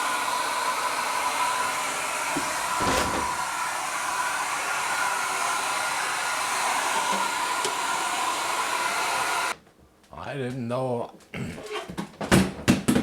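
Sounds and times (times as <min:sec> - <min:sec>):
hair dryer blowing: 0:00.0 - 0:09.6.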